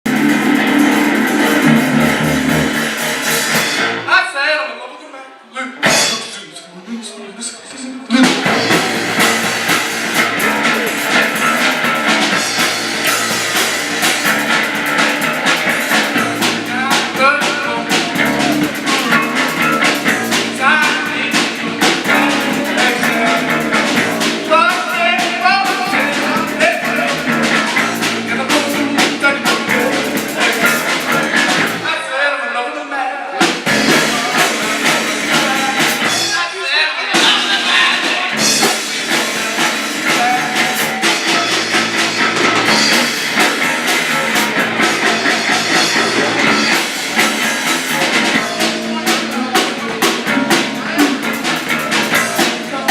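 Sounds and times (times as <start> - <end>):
rock music with drums and guitar: 0.0 - 4.2, 5.8 - 6.4, 8.2 - 31.9, 33.4 - 52.9
person singing: 15.2 - 41.9, 45.7 - 52.9.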